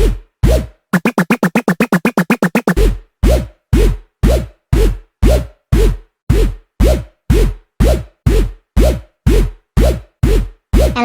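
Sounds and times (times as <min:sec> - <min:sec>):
electronic dance music: 0:00.6 - 0:04.5, 0:06.8 - 0:11.0.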